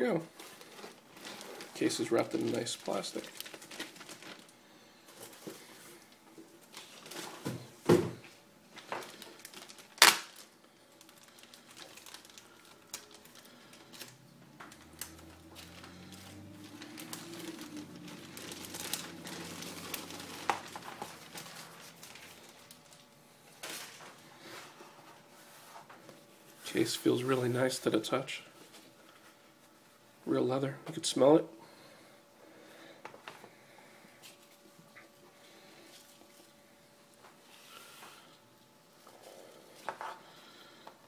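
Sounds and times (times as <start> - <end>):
plastic wrapping crinkling: 0.0 - 29.9.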